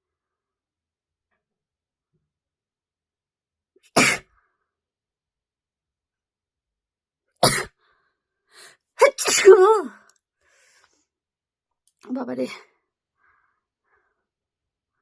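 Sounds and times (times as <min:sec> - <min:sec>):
person sneezing: 0:03.9 - 0:04.2, 0:07.4 - 0:07.7, 0:09.2 - 0:09.8.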